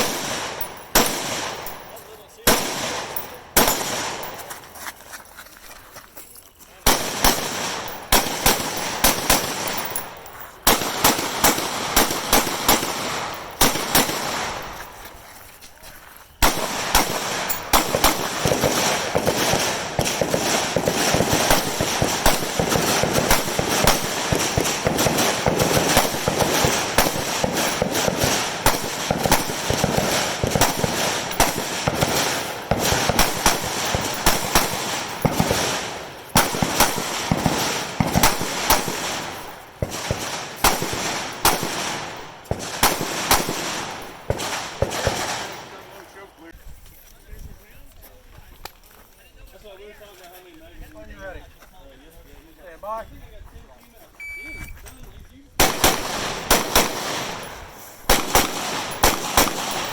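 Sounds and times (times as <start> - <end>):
rifles firing: 0.0 - 4.8, 6.8 - 15.1, 16.4 - 46.3, 55.6 - 59.9.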